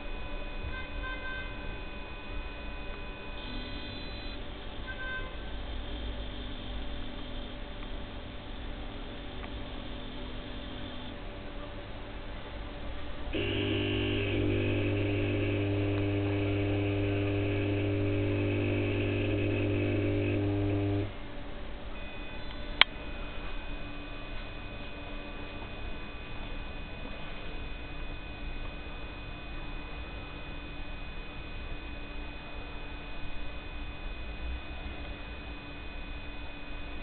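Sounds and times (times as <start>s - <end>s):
lamp ballast humming: 13.4s - 21.2s.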